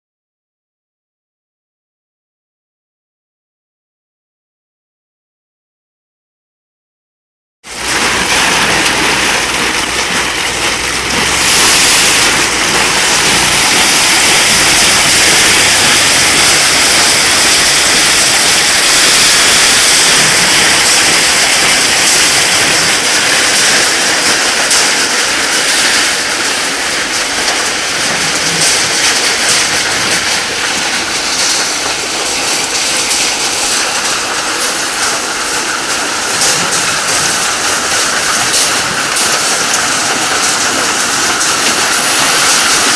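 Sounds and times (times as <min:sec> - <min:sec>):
rushing air hiss: 0:11.3 - 0:27.2.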